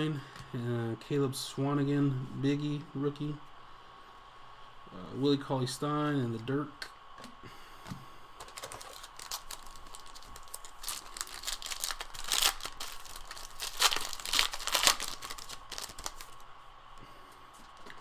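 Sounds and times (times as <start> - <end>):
foil wrapper crinkling and tearing: 8.4 - 16.4.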